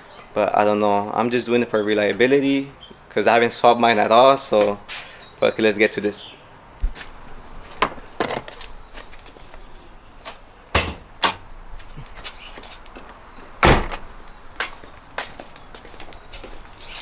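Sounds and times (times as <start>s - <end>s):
car door and hood latch clunks: 10.8s - 11.5s, 13.6s - 14.1s.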